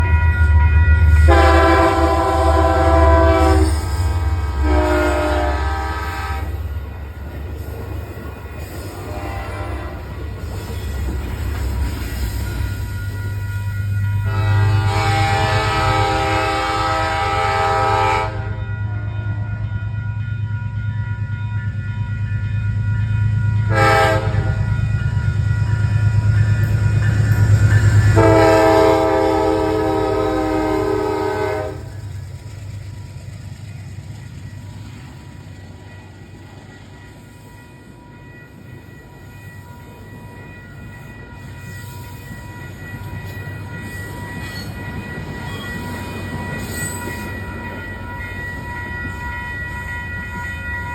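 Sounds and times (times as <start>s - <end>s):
passing train rumble: 0.0s - 50.9s
train horn blasts: 1.0s - 6.7s, 8.9s - 10.2s, 13.6s - 19.0s, 23.6s - 24.8s, 28.0s - 32.2s.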